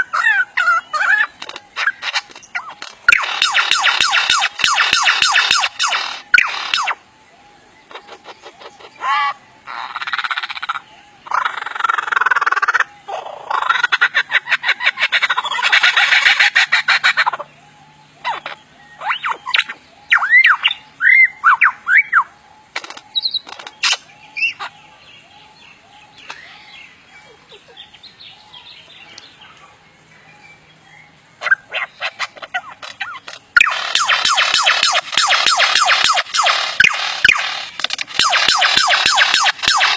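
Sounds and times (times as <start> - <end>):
lyrebird rattling clicks: 1.4 - 6.2, 22.7 - 24.0, 32.8 - 39.9.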